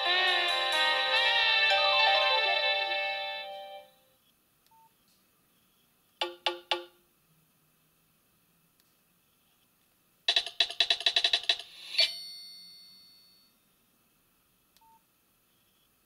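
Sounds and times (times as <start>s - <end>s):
polyphonic ringtone melody: 0.0s - 3.9s.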